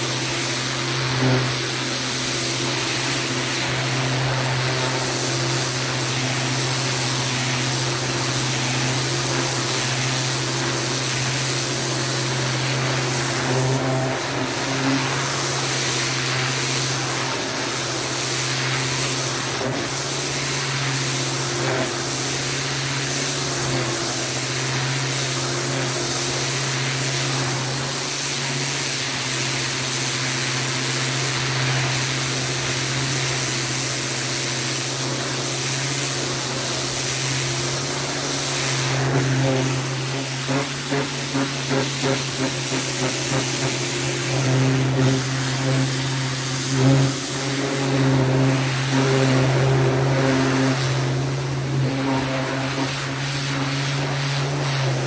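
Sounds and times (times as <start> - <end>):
pressure washer motor hum: 0.0 - 55.0
spray jet hissing: 35.7 - 55.0.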